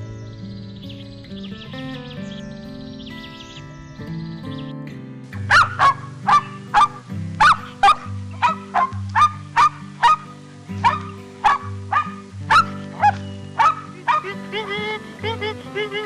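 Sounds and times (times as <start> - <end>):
background music: 1.8 - 16.0
dog barking: 5.5 - 14.4.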